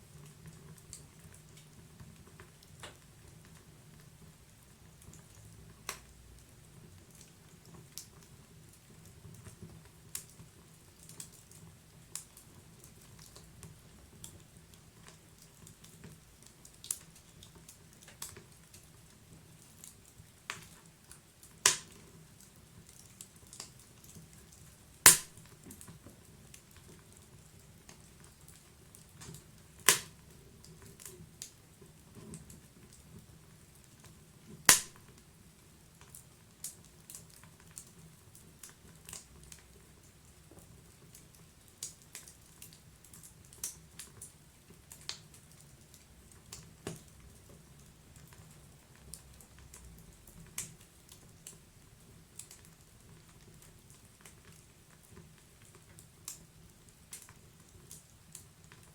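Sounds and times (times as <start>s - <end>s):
wood fire crackling and popping: 0.2s - 58.9s.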